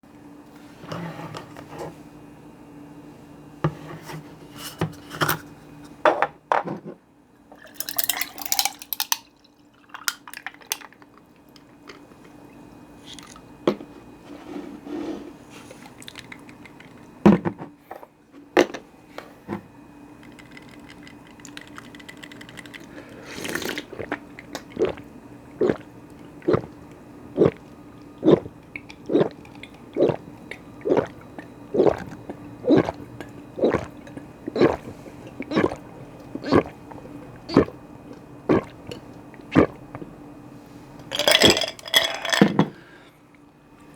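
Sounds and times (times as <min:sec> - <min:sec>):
person gulping: 0:23.4 - 0:40.2.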